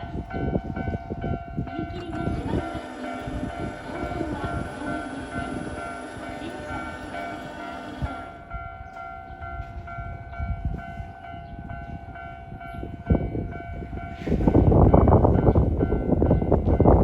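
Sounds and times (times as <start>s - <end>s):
level crossing warning bell: 0.0s - 17.0s
train wheels rumbling on rails: 0.0s - 17.0s.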